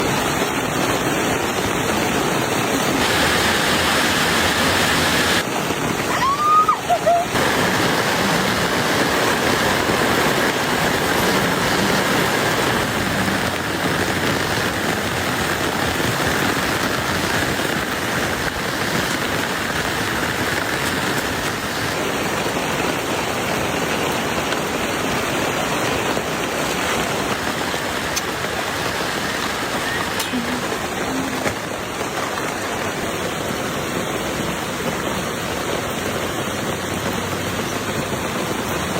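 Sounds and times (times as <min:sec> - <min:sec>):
heavy rain falling: 0:00.0 - 0:38.9
high gliding call: 0:29.2 - 0:31.7.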